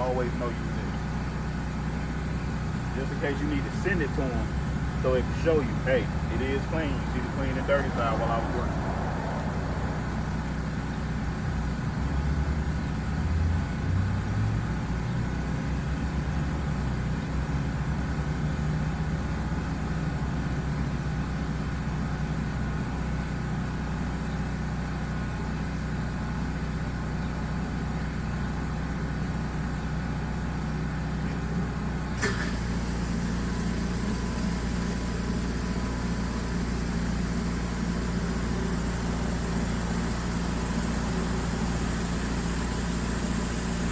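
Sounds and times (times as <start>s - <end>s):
pressure washer engine droning: 0.0s - 15.8s, 31.8s - 43.9s.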